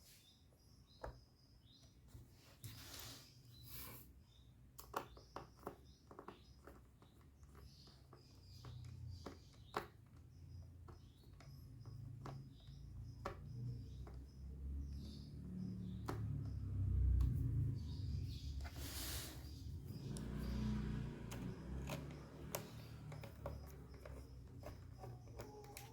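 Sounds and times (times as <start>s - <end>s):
faint bird chirps: 0.0s - 25.9s
laptop keys clicking: 19.9s - 25.9s.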